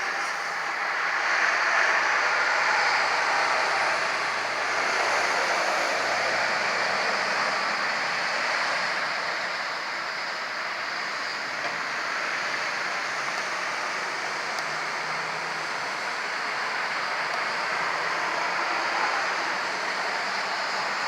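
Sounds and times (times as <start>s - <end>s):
road traffic with trucks: 0.0s - 21.0s.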